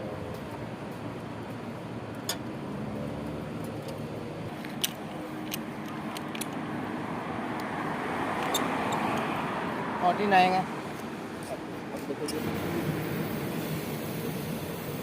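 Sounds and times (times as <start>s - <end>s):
pressure washer spraying: 12.4s - 15.0s.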